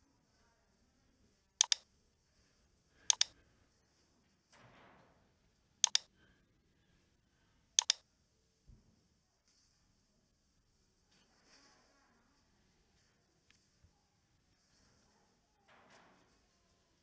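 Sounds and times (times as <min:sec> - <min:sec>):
mouse button clicking: 0:01.6 - 0:01.8, 0:03.1 - 0:03.3, 0:05.8 - 0:06.0, 0:07.8 - 0:08.0.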